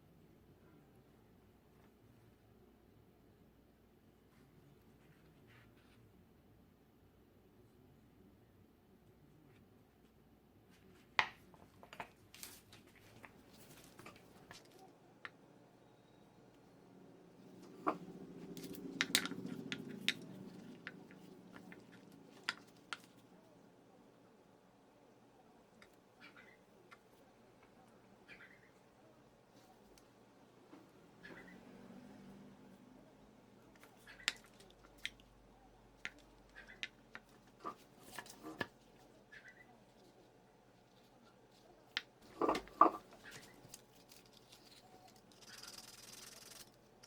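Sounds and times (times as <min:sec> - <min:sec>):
small hard objects clicking: 0:17.6 - 0:23.1.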